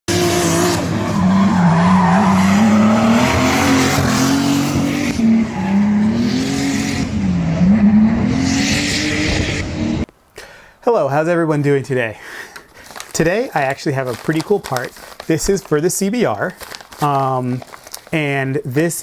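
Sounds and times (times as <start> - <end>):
car engine revving: 0.1 - 10.1.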